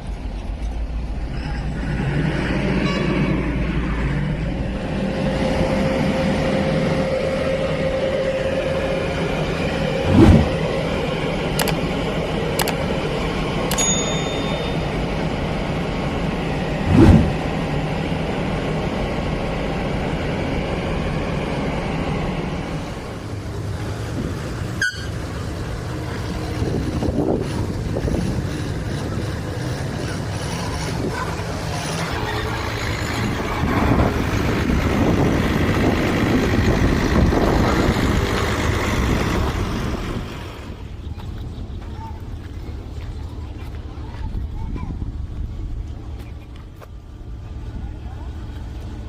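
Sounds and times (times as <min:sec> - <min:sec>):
heavy machine engine running: 0:00.0 - 0:49.0
sharp click: 0:11.6 - 0:11.8, 0:12.6 - 0:12.8, 0:13.7 - 0:13.9
high metallic ding: 0:13.7 - 0:15.1.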